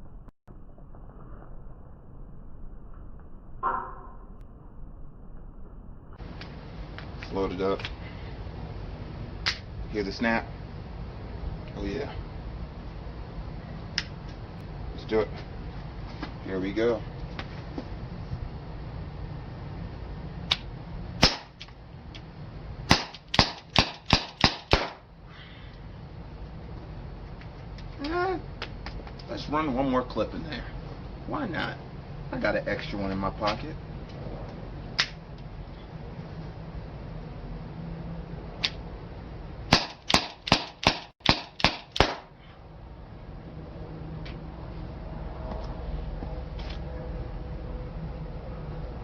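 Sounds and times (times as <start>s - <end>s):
airgun shots: 21.2s - 21.6s, 22.9s - 25.0s, 39.7s - 42.3s.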